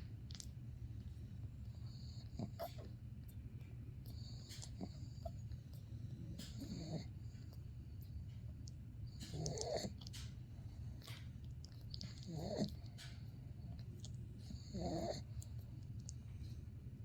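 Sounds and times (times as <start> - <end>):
steady low hum: 0.0 - 17.0
dog snoring: 1.6 - 2.9, 4.1 - 7.5, 9.1 - 10.1, 11.8 - 13.8, 14.4 - 15.5.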